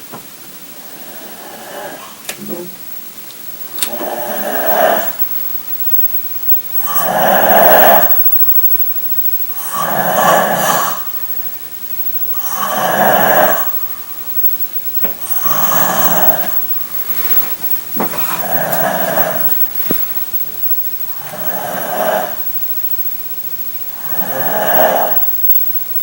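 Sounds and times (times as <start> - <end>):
pet snoring loudly: 0.8 - 2.2, 3.7 - 5.3, 6.8 - 8.2, 9.5 - 11.3, 12.3 - 14.4, 15.0 - 20.3, 21.1 - 22.5, 24.0 - 25.4.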